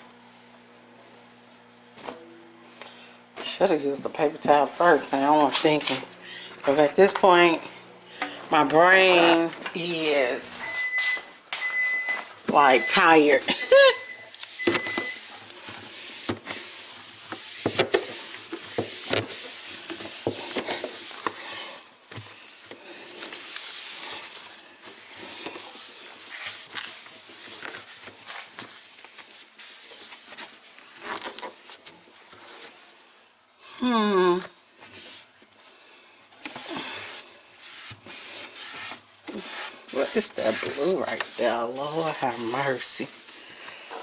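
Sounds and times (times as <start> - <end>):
paper towel wiping surfaces: 12.8 - 32.7, 36.7 - 44.0.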